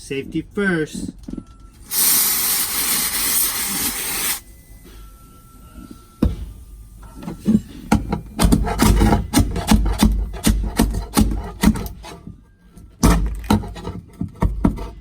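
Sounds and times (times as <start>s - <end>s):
aerosol can spraying hiss: 1.9s - 4.4s
pry tool scraping: 8.4s - 12.3s, 13.0s - 15.0s.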